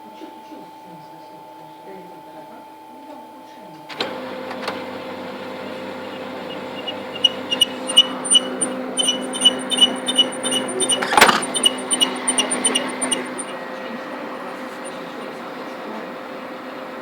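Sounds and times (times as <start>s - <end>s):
laser printer humming: 3.9s - 17.0s
high-pitched squeaks: 4.0s - 17.0s.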